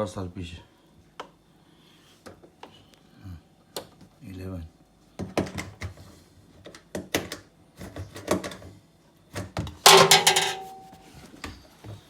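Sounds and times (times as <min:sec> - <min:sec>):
ringing metallic clang: 0:09.9 - 0:11.1.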